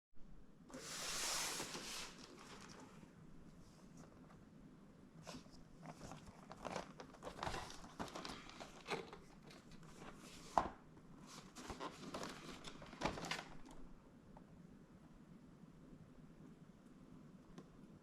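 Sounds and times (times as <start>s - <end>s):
packaging crinkling and rustling: 0.8s - 3.1s, 5.3s - 10.7s, 11.3s - 13.9s.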